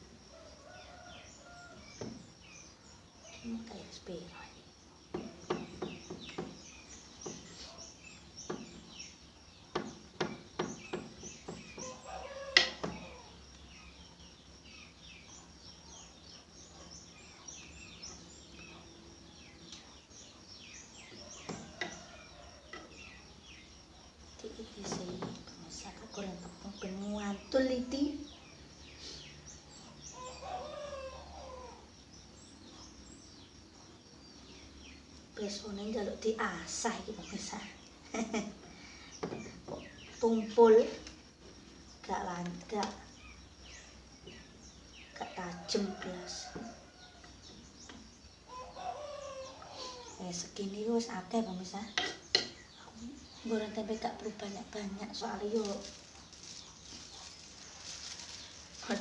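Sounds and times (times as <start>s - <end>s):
birds chirping: 0.0s - 59.0s
sharp knocks of kitchen work: 9.7s - 11.9s.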